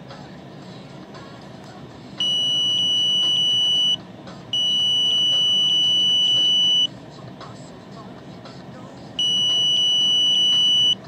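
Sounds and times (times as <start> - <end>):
high-pitched detector beeps: 2.2 - 4.0, 4.6 - 6.9, 9.2 - 11.0.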